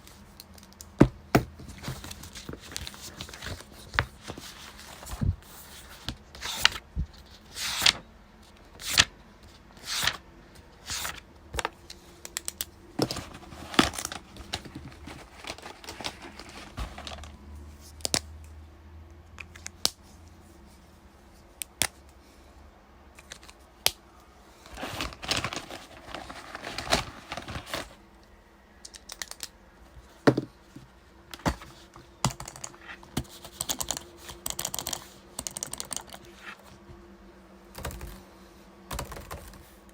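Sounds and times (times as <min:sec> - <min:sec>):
paper rustling: 0:01.4 - 0:08.0, 0:10.8 - 0:11.7, 0:13.0 - 0:17.4, 0:24.6 - 0:28.0
keyboard typing: 0:33.4 - 0:36.3, 0:37.8 - 0:38.2, 0:38.9 - 0:39.6.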